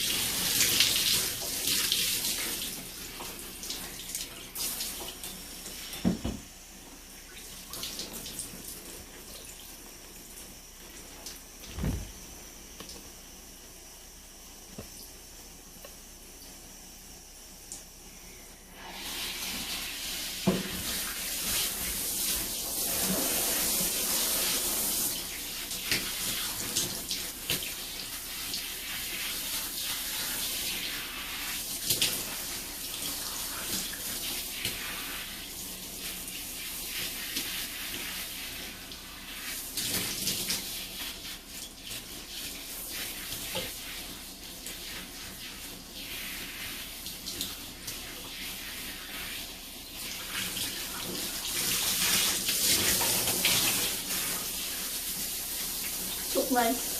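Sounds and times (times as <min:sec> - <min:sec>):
tap water running into sink: 0:07.2 - 0:13.0, 0:18.9 - 0:56.9.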